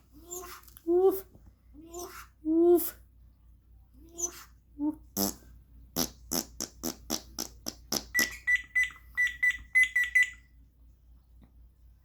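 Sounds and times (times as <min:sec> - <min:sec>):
parrot mimicking a fart: 0:05.2 - 0:08.4.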